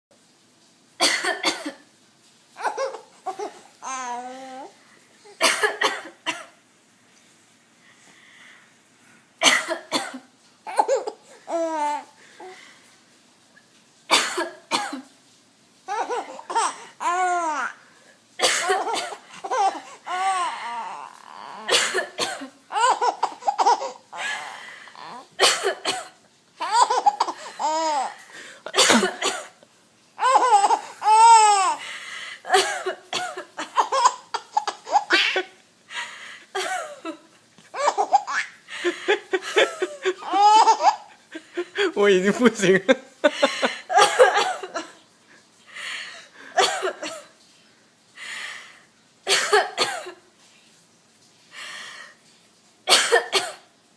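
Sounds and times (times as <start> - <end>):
woman coughing: 1.0 - 1.8, 5.4 - 6.5, 9.4 - 11.1, 14.1 - 15.0, 18.4 - 19.8, 21.6 - 23.9, 25.4 - 27.8, 28.7 - 29.6, 32.5 - 35.5, 36.6 - 37.2, 43.4 - 44.9, 46.6 - 47.3, 49.3 - 50.2, 52.9 - 53.6
baby laughing: 2.6 - 4.7, 10.7 - 12.1, 15.9 - 17.8, 18.4 - 25.8, 26.6 - 29.2, 30.2 - 31.8, 33.4 - 35.6, 36.5 - 42.6.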